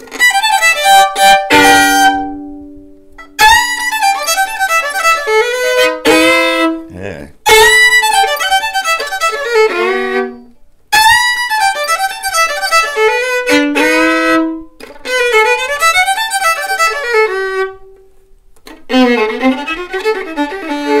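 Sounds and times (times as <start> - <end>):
solo fiddle playing: 0.1 - 2.7, 7.5 - 17.9, 18.8 - 21.0.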